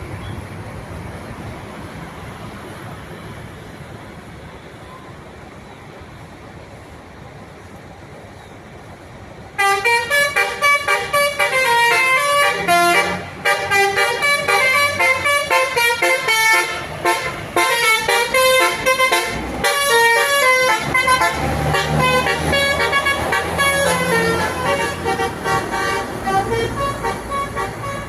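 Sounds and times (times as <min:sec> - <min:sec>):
bus horn playing melody: 0:09.6 - 0:28.0.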